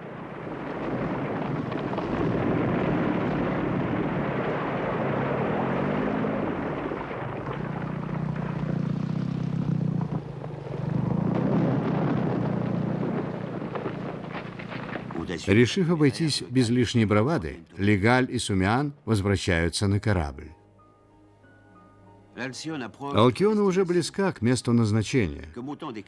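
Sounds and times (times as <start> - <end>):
low droning tone: 0.0 - 15.1
glacier ice collapsing rumble: 0.0 - 17.2.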